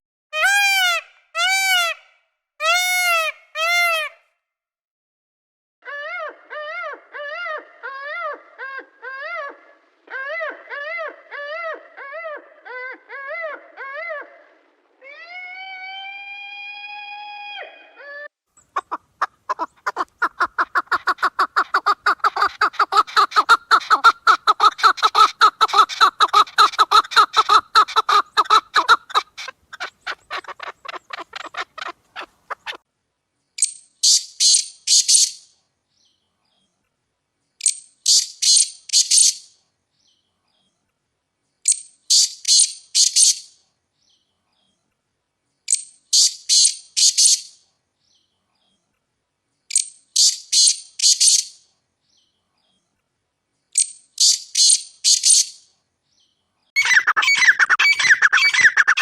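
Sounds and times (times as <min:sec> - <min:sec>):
poultry calling: 0:00.4 - 0:04.2, 0:18.7 - 0:32.8, 0:56.8 - 0:59.0.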